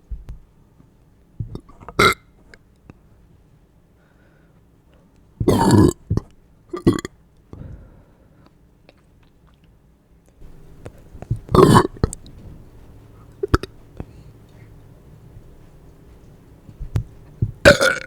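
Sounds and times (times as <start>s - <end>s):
person burping: 1.4s - 2.2s, 5.4s - 6.2s, 6.8s - 7.1s, 11.3s - 12.2s, 13.4s - 13.7s, 17.6s - 18.0s.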